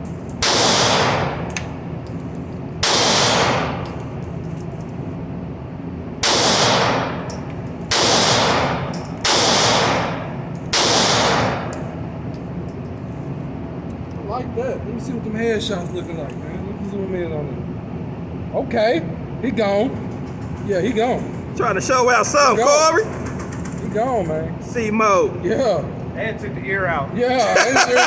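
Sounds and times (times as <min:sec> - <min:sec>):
handgun shots echoing: 0:00.4 - 0:01.7, 0:02.8 - 0:04.1, 0:06.2 - 0:11.8.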